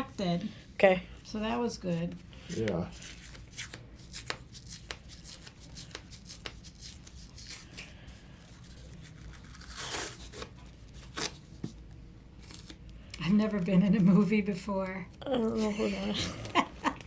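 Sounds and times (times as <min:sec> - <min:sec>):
rustles of tape and packaging: 0:01.1 - 0:13.2.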